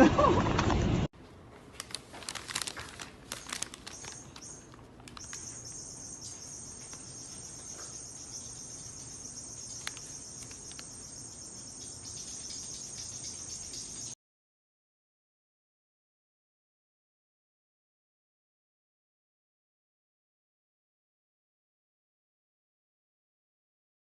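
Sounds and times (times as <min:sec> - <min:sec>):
sharp clicks: 0:01.8 - 0:05.7, 0:09.6 - 0:11.0
insects chirping: 0:03.3 - 0:14.2.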